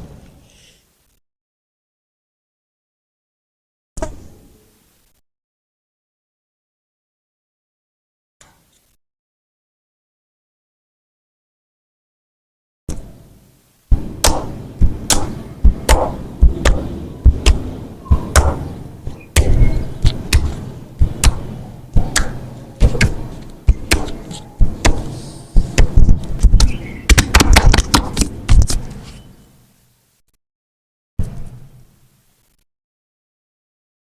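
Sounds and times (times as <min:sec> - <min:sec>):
massage thumping slaps on back: 0:13.9 - 0:18.7, 0:19.4 - 0:28.8.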